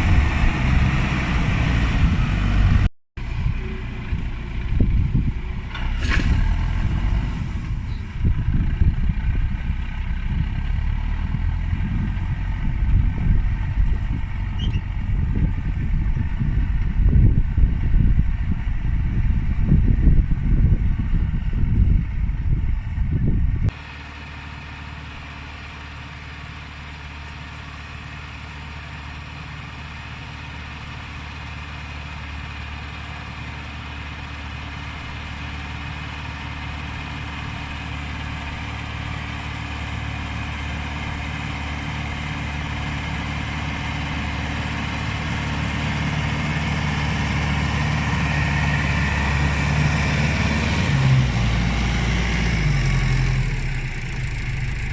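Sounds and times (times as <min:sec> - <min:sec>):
loud low rumble: 0:00.0 - 0:23.8
tractor diesel engine running: 0:00.0 - 0:54.9.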